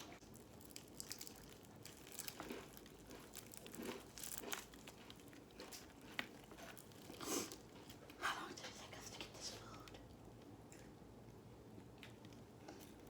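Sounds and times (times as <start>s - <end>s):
crunchy chicken being chewed: 0.0s - 8.2s.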